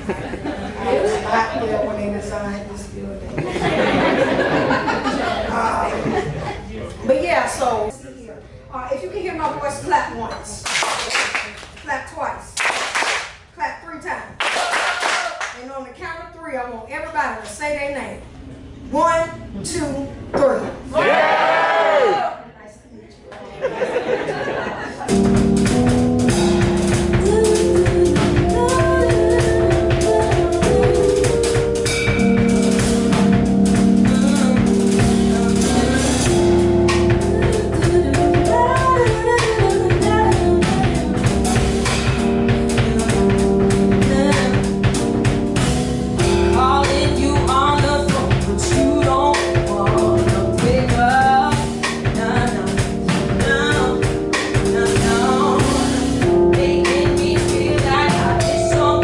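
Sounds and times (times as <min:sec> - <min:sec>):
bass notes: 0:25.0 - 0:59.0
drum kit and tambourine beat: 0:25.1 - 0:59.0.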